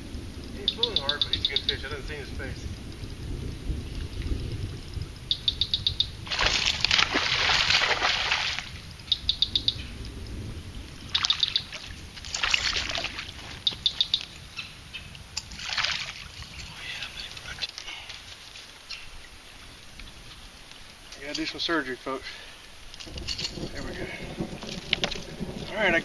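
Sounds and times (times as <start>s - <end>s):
water splashing: 3.8s - 9.4s, 10.1s - 26.0s
fish thrashing at surface: 6.3s - 8.7s, 12.2s - 13.6s.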